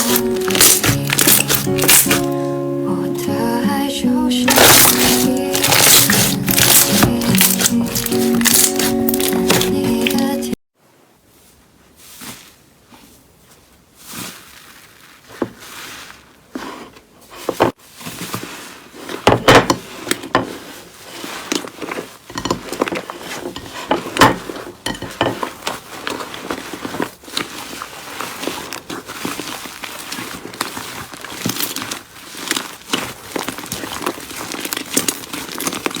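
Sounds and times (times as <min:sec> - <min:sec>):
slime clicking and popping: 0:00.0 - 0:02.4, 0:04.5 - 0:09.7.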